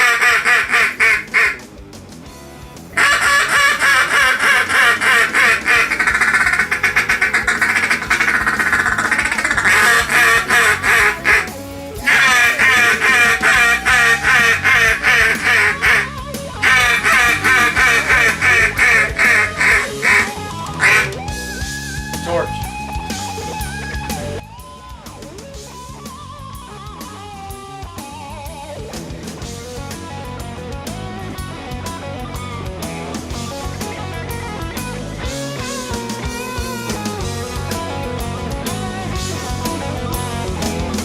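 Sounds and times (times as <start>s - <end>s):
duck call chuckles and quacks: 0.0s - 1.6s, 3.0s - 21.2s
background music: 0.0s - 41.0s.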